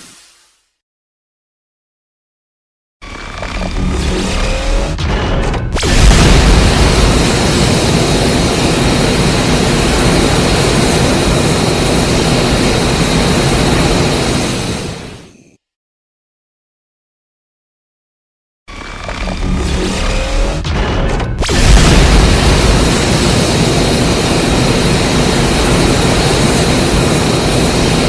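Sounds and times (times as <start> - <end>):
dense mechanical rumble: 3.0 - 13.5, 18.7 - 28.0
jet-like rush with high whine: 3.0 - 15.5, 18.7 - 28.0.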